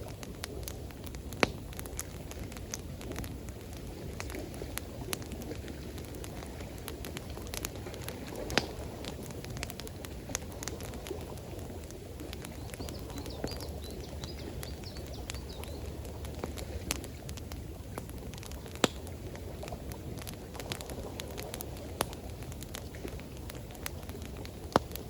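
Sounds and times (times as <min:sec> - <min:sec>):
campfire crackling and popping: 0:00.0 - 0:25.0
rush of water: 0:00.0 - 0:25.0
small bird calling: 0:12.4 - 0:15.9.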